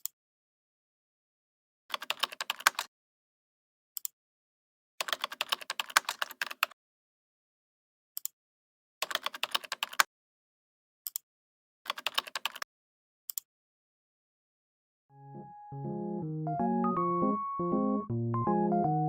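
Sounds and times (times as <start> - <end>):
computer keyboard typing: 1.9 - 2.9, 5.0 - 6.7, 9.0 - 10.1, 11.9 - 12.6.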